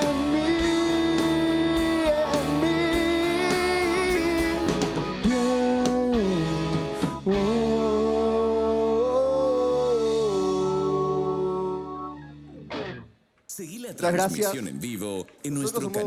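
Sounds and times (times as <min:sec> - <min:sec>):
singer holding long notes: 0:00.0 - 0:12.2
electric guitar: 0:00.0 - 0:13.2.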